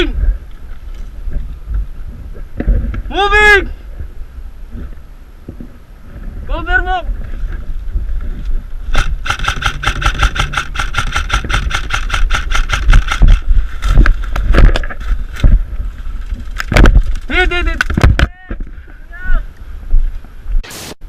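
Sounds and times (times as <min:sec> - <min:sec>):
microphone handling noise: 0:00.0 - 0:03.1, 0:03.9 - 0:19.0
wind rumble on microphone: 0:00.0 - 0:20.6
airsoft rifle firing: 0:08.9 - 0:13.5.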